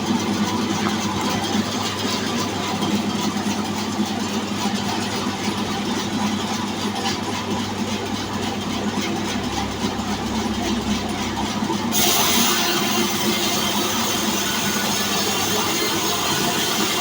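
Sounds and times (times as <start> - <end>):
band sawmill humming: 9.7 - 17.0.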